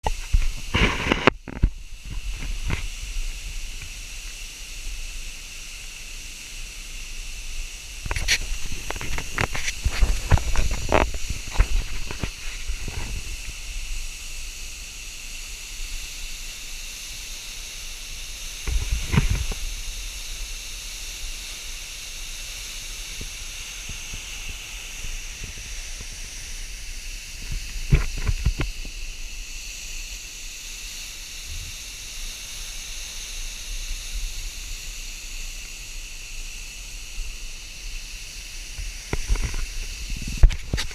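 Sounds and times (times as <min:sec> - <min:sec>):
waterfall rushing hiss: 0:00.0 - 0:40.9.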